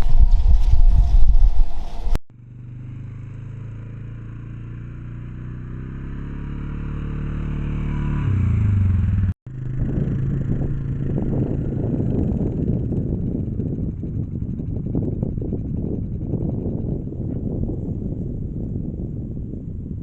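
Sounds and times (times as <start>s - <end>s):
loud low rumbling: 0.0s - 2.2s, 3.4s - 20.0s
rough noise: 0.0s - 2.2s
vehicle engine humming: 0.0s - 18.0s.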